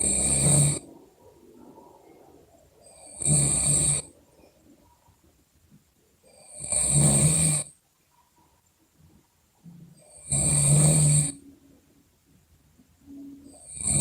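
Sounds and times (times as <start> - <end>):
loud snoring: 0.0 - 0.9, 2.9 - 4.1, 6.4 - 7.7, 10.1 - 11.4, 13.6 - 14.0
quiet breathing: 0.0 - 14.0.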